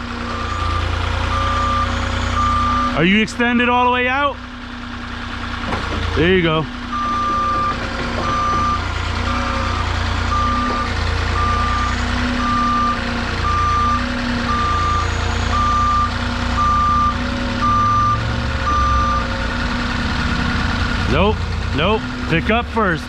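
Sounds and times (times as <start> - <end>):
forklift engine running: 0.0 - 23.0
reversing alarm beeping: 0.3 - 3.0, 6.9 - 19.4.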